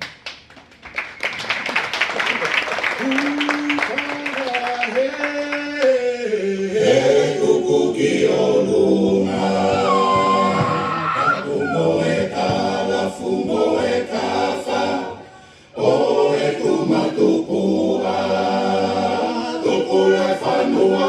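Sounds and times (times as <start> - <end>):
unaccompanied choir singing: 5.3 - 21.0.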